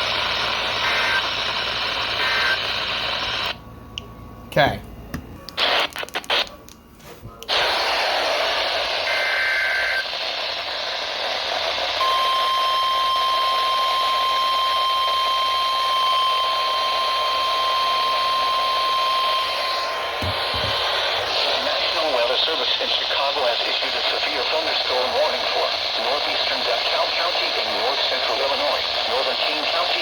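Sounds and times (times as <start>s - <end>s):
steady warning alarm tone: 12.0s - 22.1s.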